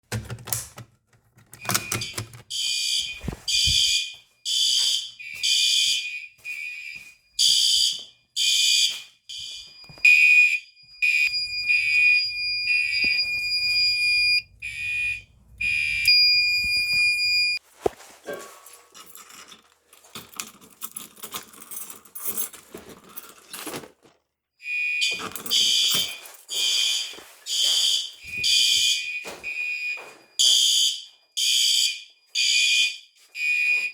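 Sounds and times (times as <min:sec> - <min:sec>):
fire alarm blasts: 0:01.6 - 0:17.6, 0:24.6 - 0:33.9
fire alarm held tone: 0:01.6 - 0:17.6, 0:24.6 - 0:33.9.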